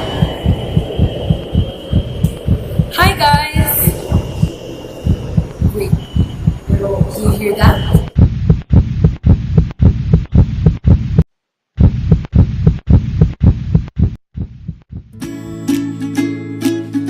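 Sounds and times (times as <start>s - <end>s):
heartbeat thumps: 0.0s - 15.2s
plucked ukulele music: 15.2s - 17.0s.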